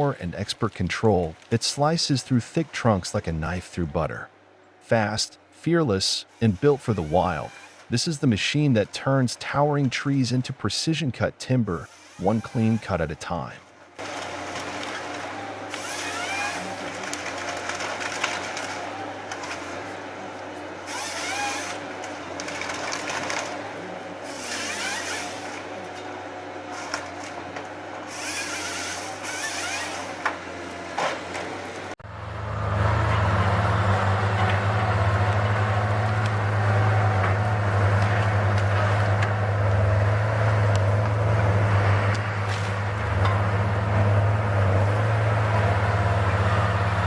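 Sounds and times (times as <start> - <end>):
heavy machine engine running: 0.0 - 47.0
chainsaw cutting wood: 6.3 - 7.9, 11.8 - 13.0, 14.0 - 20.1, 20.8 - 26.0, 26.7 - 31.4.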